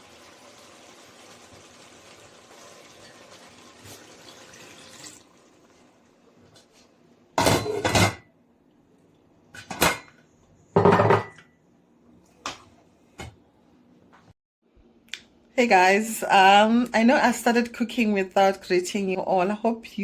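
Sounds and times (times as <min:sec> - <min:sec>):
pots and utensils clattering: 0:02.6 - 0:04.4, 0:07.4 - 0:08.3, 0:09.6 - 0:10.2, 0:10.8 - 0:11.4.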